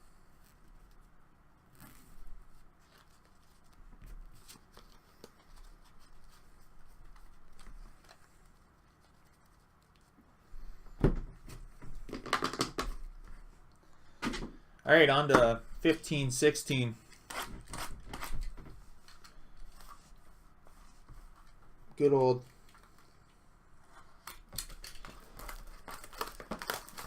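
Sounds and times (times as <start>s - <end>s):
cards shuffling and rustling: 2.8s - 10.1s, 24.0s - 27.0s.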